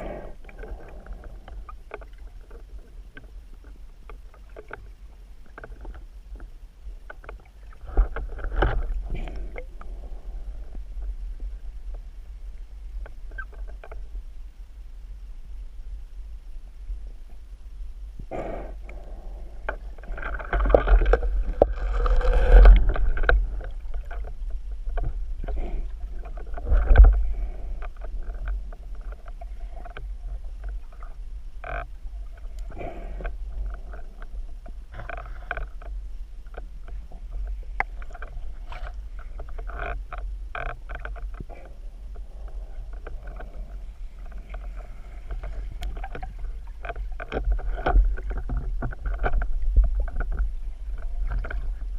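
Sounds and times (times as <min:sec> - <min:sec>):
deep rumble: 0:06.1 - 0:51.9
water sloshing and splashing: 0:19.0 - 0:51.9.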